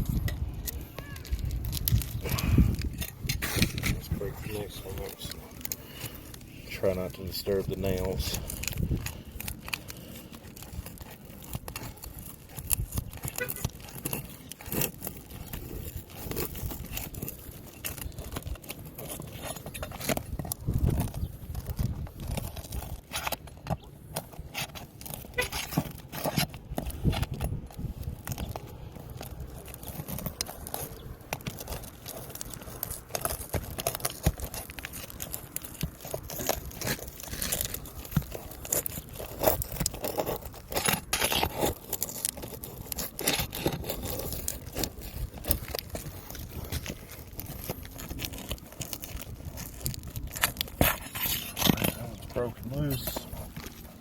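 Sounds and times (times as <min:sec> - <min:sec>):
roof shingle scraping and tearing: 0:00.0 - 0:54.0.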